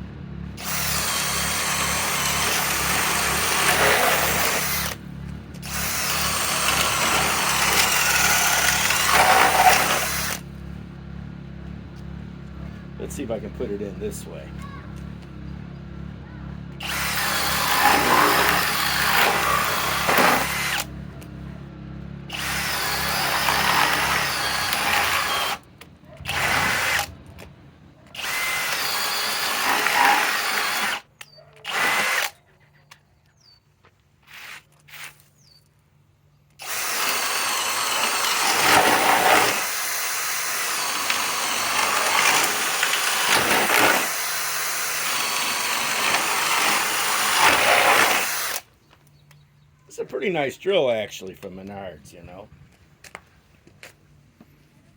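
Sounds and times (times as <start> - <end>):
cordless drill boring into wood: 0.6 - 5.0, 5.6 - 10.5, 16.8 - 20.9, 22.3 - 27.2, 28.2 - 32.4, 36.6 - 48.7.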